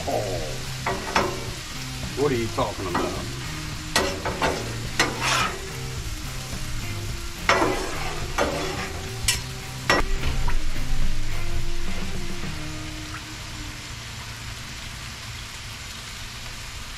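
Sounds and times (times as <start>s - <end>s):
faint background music: 0.0s - 14.3s
food sizzling on griddle: 0.0s - 16.9s
spatula scraping on steel: 3.9s - 6.0s, 7.4s - 10.1s.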